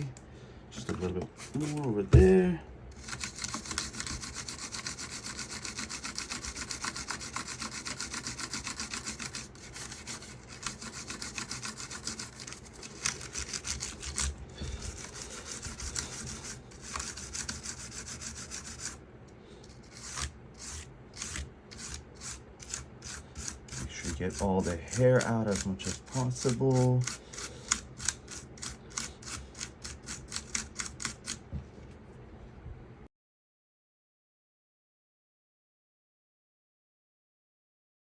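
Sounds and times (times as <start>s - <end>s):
toothbrush scrubbing keyboard plate: 0.8s - 2.3s, 3.0s - 19.0s, 19.7s - 31.4s.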